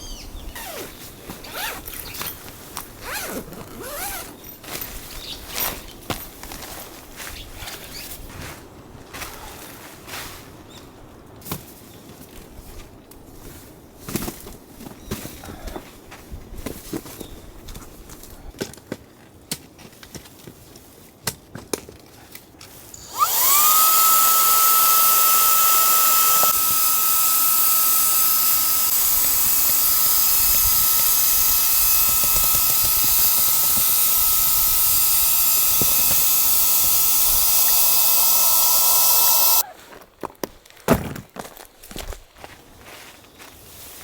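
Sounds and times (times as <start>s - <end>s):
high-speed electric motor whine: 23.0s - 39.6s.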